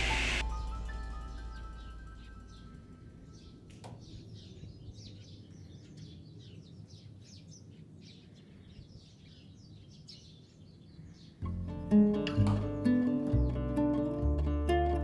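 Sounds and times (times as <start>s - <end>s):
low background rumble: 0.0s - 5.0s
birds chirping faintly: 0.0s - 14.2s.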